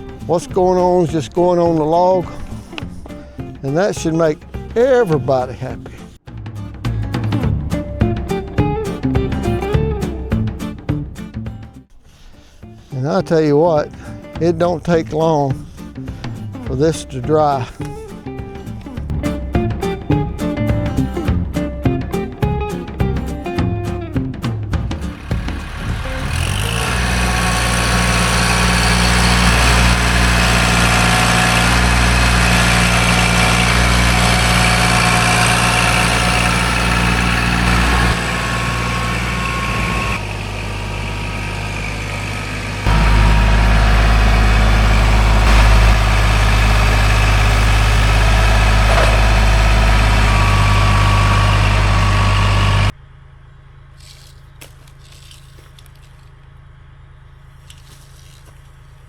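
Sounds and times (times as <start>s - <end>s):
sawmill gas engine running: 24.9s - 59.0s.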